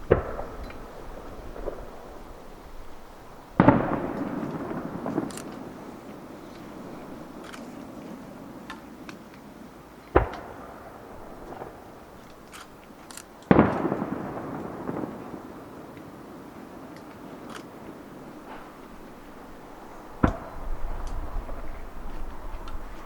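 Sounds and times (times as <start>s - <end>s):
faint firework pops: 0.0s - 2.0s, 10.2s - 10.7s, 13.1s - 16.1s, 20.2s - 21.7s
firework shells bursting: 0.0s - 22.0s.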